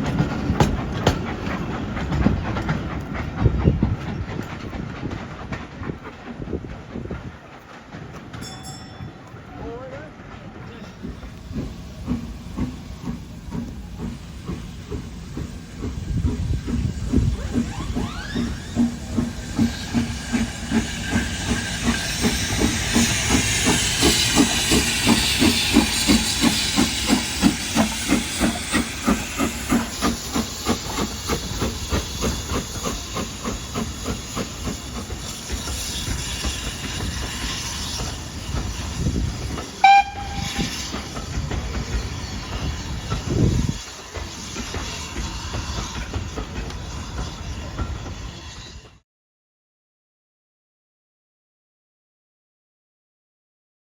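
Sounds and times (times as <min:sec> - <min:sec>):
steam locomotive exhaust beat: 0:00.0 - 0:49.0
steady steam hiss: 0:10.6 - 0:48.8
steam whistle toot: 0:39.8 - 0:41.0.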